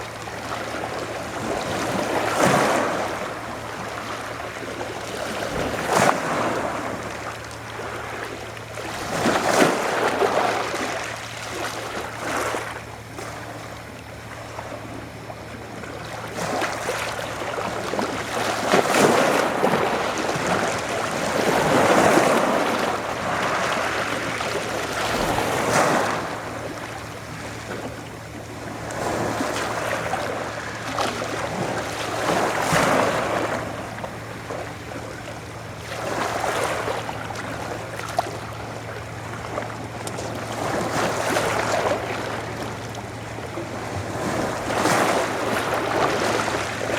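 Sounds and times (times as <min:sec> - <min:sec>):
waves washing onto shore: 0:15.9 - 0:46.9.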